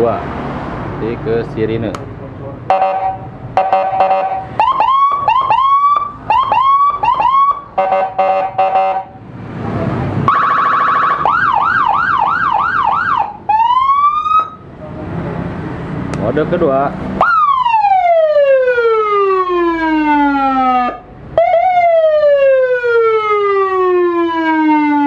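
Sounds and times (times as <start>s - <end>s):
electronic siren cycling tones: 2.7s - 9.1s, 10.3s - 14.6s, 17.2s - 25.0s.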